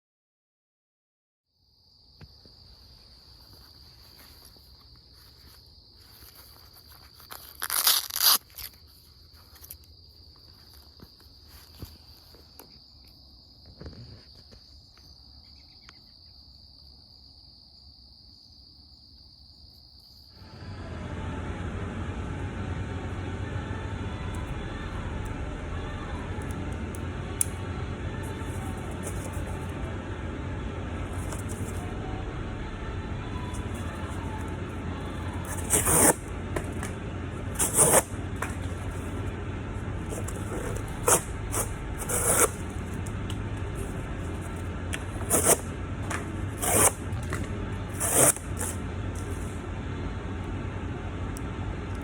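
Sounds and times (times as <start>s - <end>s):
even rumbling noise: 20.4s - 52.0s.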